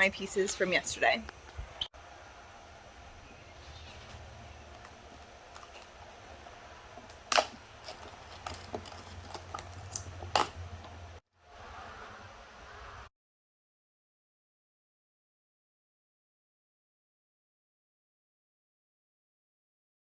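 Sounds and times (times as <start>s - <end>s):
low steady hum: 0.0s - 13.1s.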